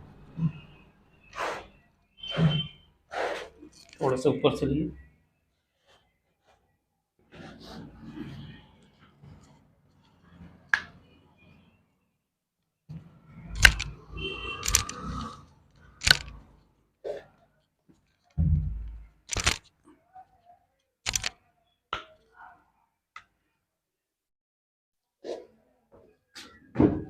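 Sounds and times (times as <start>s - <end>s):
body joints cracking: 13.6s - 14.0s, 14.6s - 15.3s, 16.0s - 16.4s, 19.3s - 19.7s, 21.1s - 21.4s.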